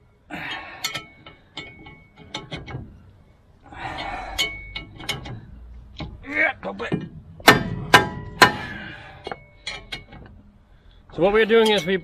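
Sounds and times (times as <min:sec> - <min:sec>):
metal scraping: 0:00.4 - 0:12.0
metal hand tools clinking: 0:11.4 - 0:12.0.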